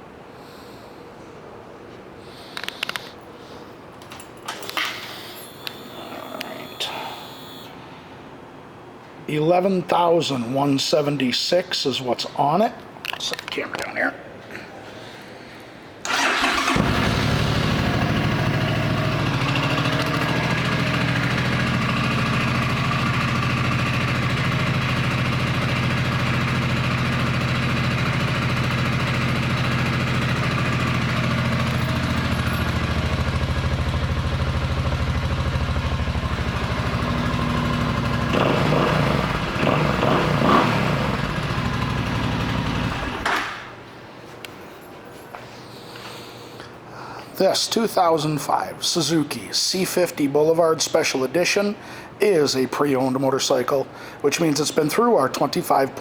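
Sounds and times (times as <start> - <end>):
motorcycle engine idling: 16.1 - 43.2.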